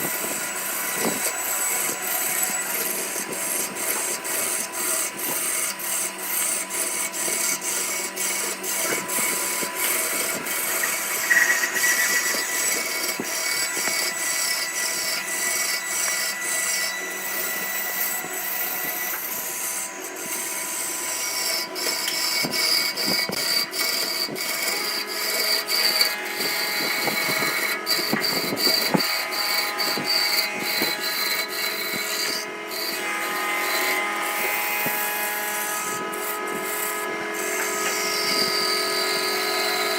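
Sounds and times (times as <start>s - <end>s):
tool clicking on wood: 0.0s - 39.9s
wood lathe whine: 0.0s - 39.9s.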